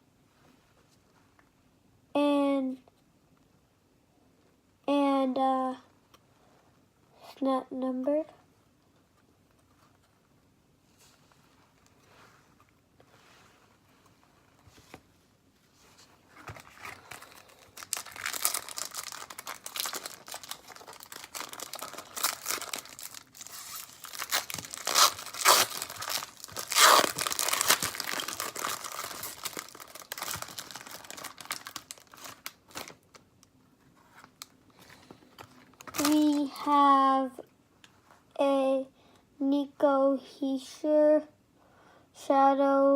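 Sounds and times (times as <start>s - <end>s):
plastic wrapper tearing and crinkling: 16.4s - 33.3s, 35.6s - 36.5s.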